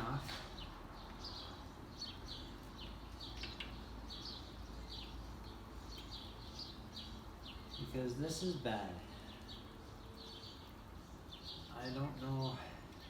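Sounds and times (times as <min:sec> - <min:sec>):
small bird chirping: 0:00.0 - 0:13.0.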